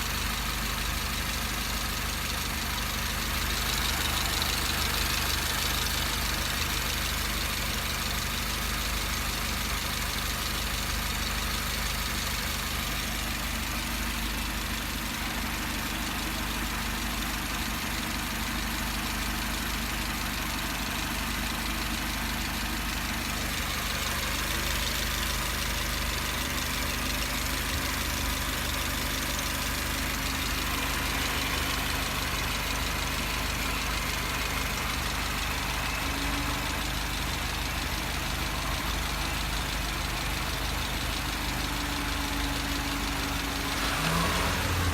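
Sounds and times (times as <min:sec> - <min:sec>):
car engine humming: 0:00.0 - 0:10.7, 0:20.1 - 0:44.9.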